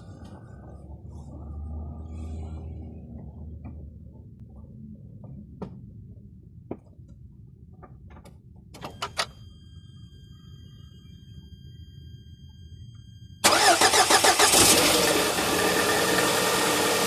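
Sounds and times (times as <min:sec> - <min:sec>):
faint high electrical whine: 0:08.7 - 0:13.5.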